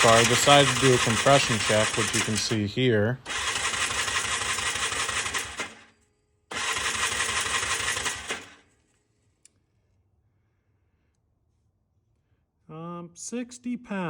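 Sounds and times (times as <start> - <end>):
engine cranking without starting: 0.0 - 8.7.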